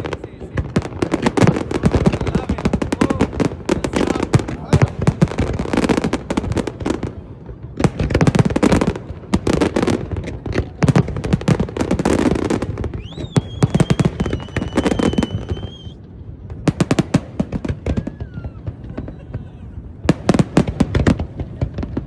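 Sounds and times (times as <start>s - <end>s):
fireworks bangs: 0.0s - 22.0s
fireworks crackling bursts: 0.0s - 22.0s
high firework whistle: 12.8s - 16.0s.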